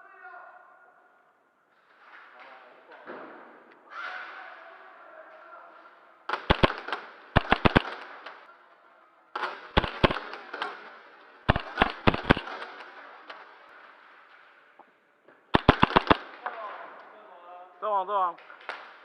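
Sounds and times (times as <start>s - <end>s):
airsoft guns firing: 6.3s - 8.6s, 9.3s - 14.7s, 15.4s - 17.0s, 18.4s - 19.0s.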